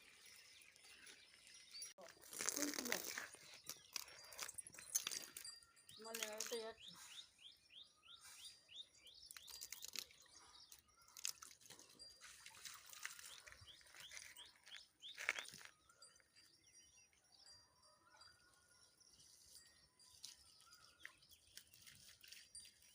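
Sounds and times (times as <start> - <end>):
small bird chirping: 0.0 - 22.9
crunches and scrapes: 2.0 - 5.6.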